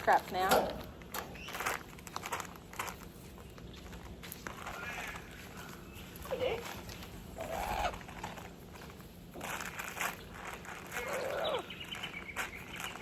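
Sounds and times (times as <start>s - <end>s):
harsh bird call: 7.4s - 8.4s, 10.8s - 13.0s
long falling bird call: 10.0s - 13.0s
high bird chirps: 10.1s - 13.0s.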